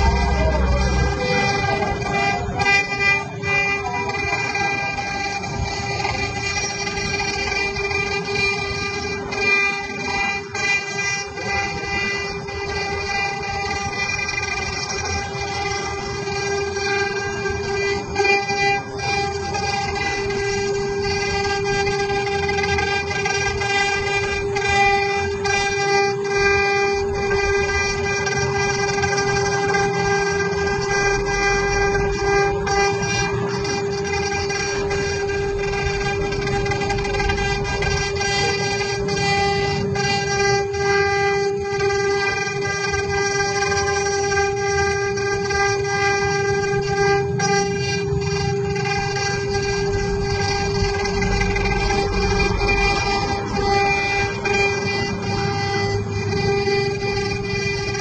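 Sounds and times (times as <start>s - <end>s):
machine spindle whine: 0.0s - 58.0s.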